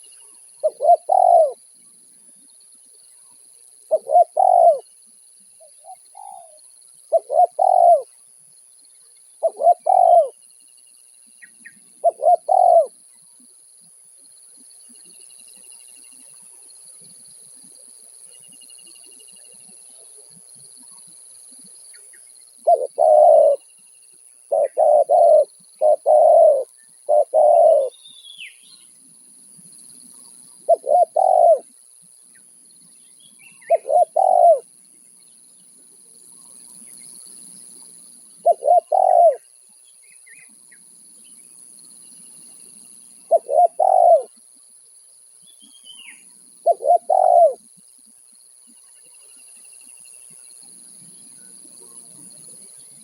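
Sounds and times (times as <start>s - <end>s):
faint bird chirps: 0.0s - 53.0s
dove cooing: 0.6s - 1.6s, 3.9s - 4.9s, 5.6s - 8.1s, 9.4s - 10.4s, 11.9s - 13.0s, 22.6s - 23.6s, 24.5s - 28.0s, 30.6s - 31.8s, 33.6s - 34.7s, 38.4s - 39.5s, 43.3s - 44.4s, 46.6s - 47.7s.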